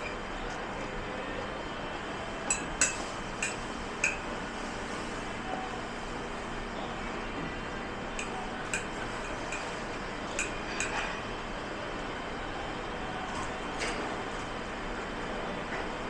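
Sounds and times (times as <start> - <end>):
steady background noise: 0.0 - 16.0
dishes and cutlery clinking: 2.5 - 4.4, 8.2 - 11.2.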